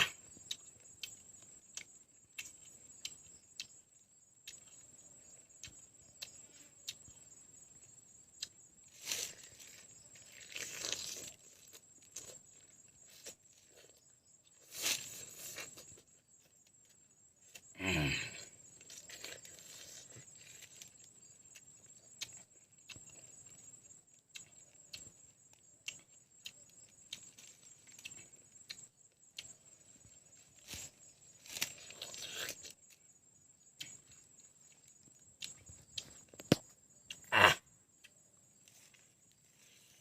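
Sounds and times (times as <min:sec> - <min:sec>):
mouth clicks and smacks: 0:35.4 - 0:38.2.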